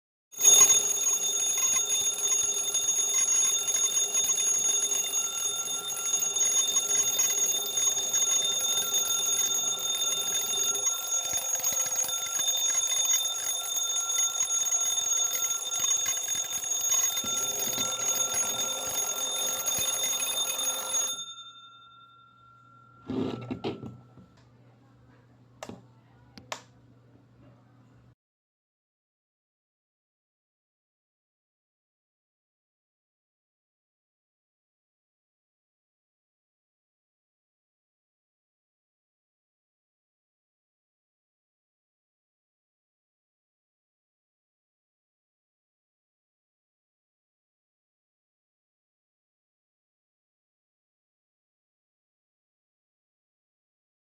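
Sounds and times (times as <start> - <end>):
alarm clock bells ringing: 0.4 - 24.1.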